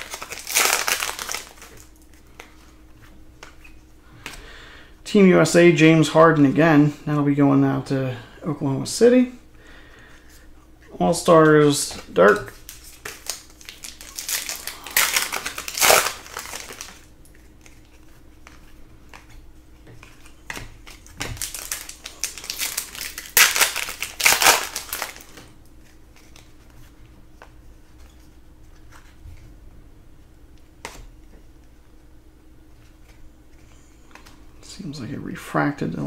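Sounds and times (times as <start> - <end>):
wrappers crinkling: 0.0 - 2.3, 12.0 - 19.2, 20.0 - 25.5
cards being handled: 0.0 - 4.4, 11.3 - 29.5.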